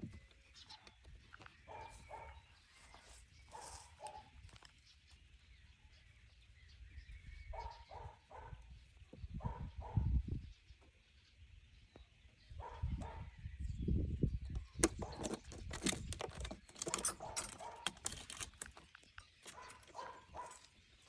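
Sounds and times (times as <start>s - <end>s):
dog barking: 1.7s - 2.5s, 3.5s - 4.4s, 7.5s - 8.7s, 9.4s - 10.2s, 12.6s - 13.3s, 19.5s - 20.7s.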